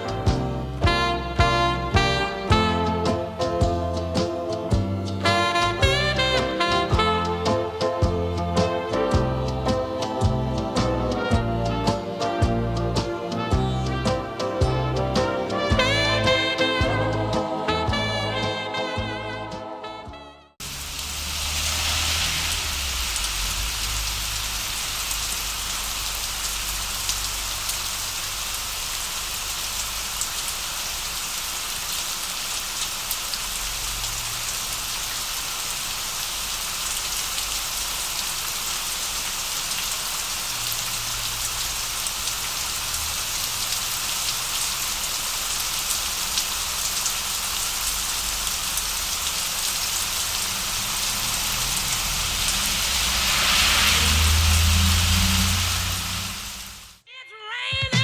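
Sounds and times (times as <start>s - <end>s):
steady rain falling: 0.0s - 18.8s, 20.6s - 57.0s
low rumble: 21.0s - 25.9s, 50.4s - 57.0s.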